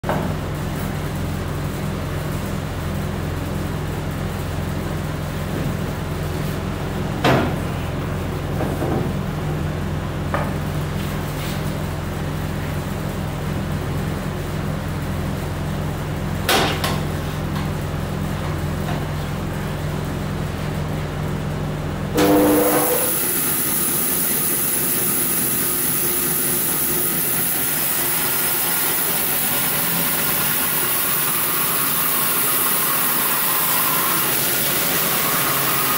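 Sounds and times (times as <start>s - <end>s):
band saw humming: 22.2s - 35.9s.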